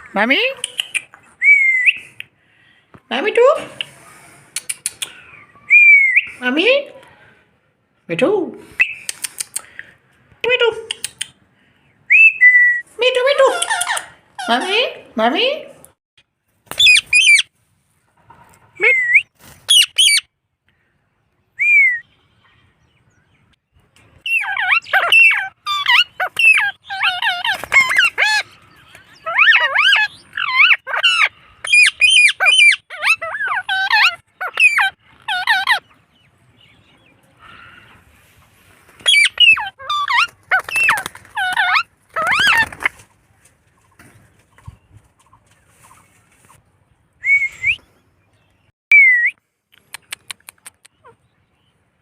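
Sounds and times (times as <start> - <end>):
parakeet chattering squawks: 24.3 - 28.5, 29.2 - 35.9, 39.0 - 42.7.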